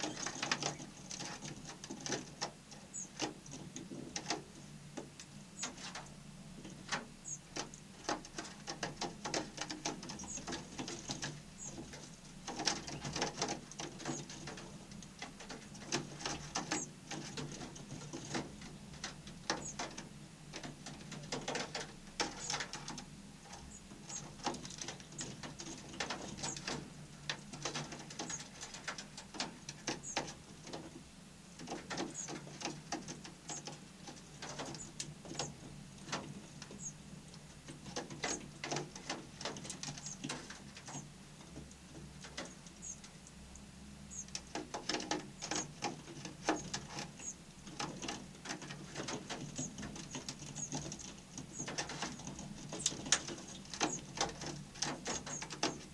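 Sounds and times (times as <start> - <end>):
small birds chirping: 0.0 - 1.4, 2.7 - 3.3, 5.5 - 6.0, 6.7 - 7.9, 9.8 - 14.6, 16.1 - 17.0, 19.5 - 19.9, 22.2 - 26.8, 29.8 - 30.8, 31.6 - 32.6, 33.2 - 41.6, 42.3 - 44.5, 45.1 - 47.8, 48.8 - 55.9.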